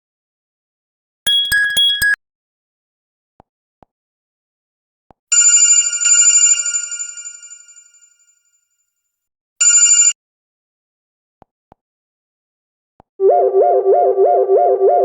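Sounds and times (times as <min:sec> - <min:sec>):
bell-like electronic ringtone: 0:01.3 - 0:02.2, 0:05.3 - 0:08.4, 0:09.6 - 0:10.2.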